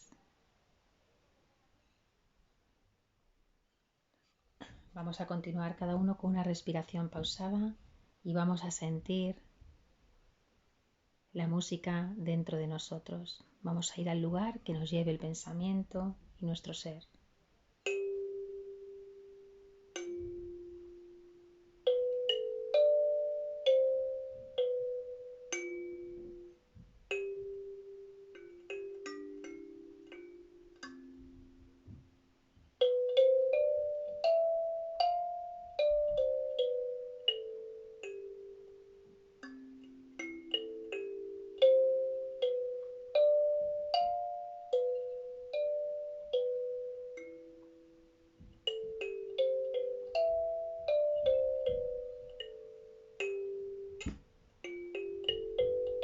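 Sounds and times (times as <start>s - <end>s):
kalimba melody: 17.8s - 56.0s.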